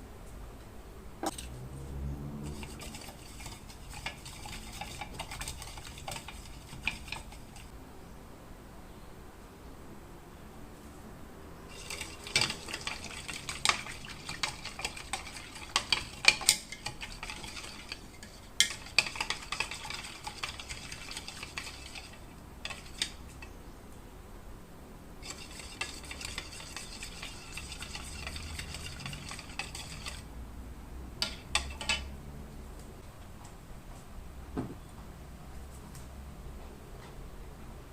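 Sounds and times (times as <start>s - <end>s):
spoon stirring in a cup: 2.4s - 7.7s, 11.7s - 23.6s, 25.2s - 30.3s, 31.2s - 32.1s.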